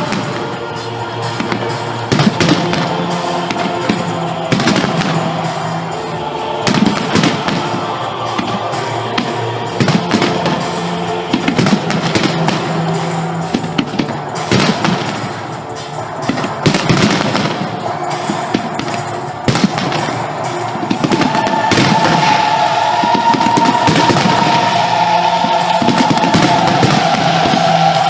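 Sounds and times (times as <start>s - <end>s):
fireworks bangs and crackling: 0.0s - 28.0s
loud music: 0.0s - 28.0s.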